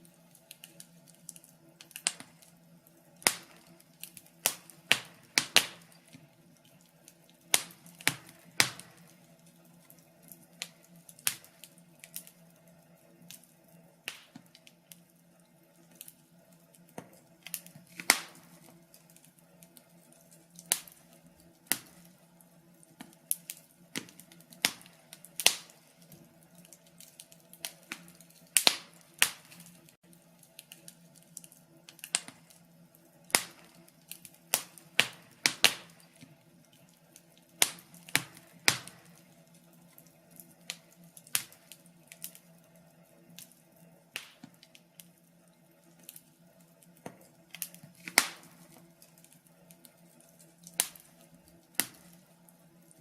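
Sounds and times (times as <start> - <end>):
wood fire crackling: 0.0 - 53.0.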